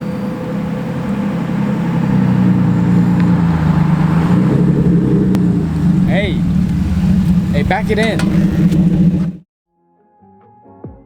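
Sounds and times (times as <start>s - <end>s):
car engine running at low revs: 0.0s - 9.4s.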